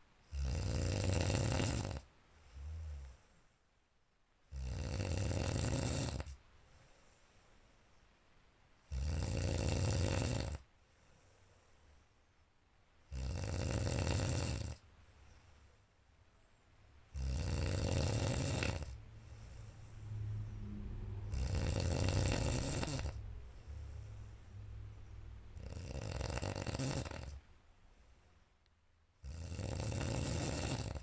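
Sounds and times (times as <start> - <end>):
person snoring loudly: 0.3 - 2.0, 4.5 - 6.3, 8.9 - 10.6, 13.1 - 14.8, 17.1 - 27.4, 29.2 - 31.0.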